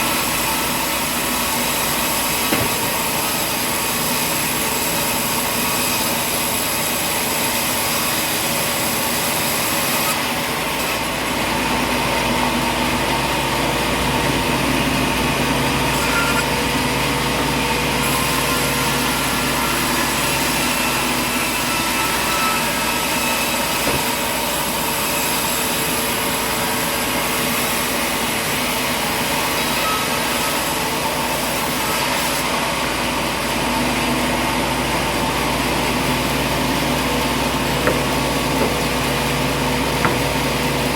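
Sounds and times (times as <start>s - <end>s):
sawmill machinery drone: 0.0s - 40.9s.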